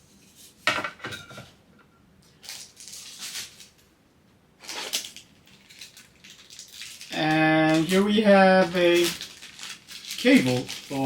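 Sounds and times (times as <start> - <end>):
packaging rustling and scraping: 2.4 - 3.8, 4.6 - 11.0.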